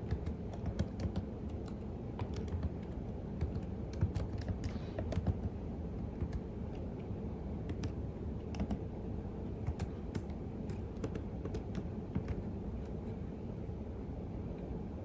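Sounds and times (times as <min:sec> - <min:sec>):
computer keyboard key clicks: 0:00.0 - 0:06.9, 0:07.7 - 0:08.8, 0:09.6 - 0:13.0
low background hum: 0:00.0 - 0:15.0.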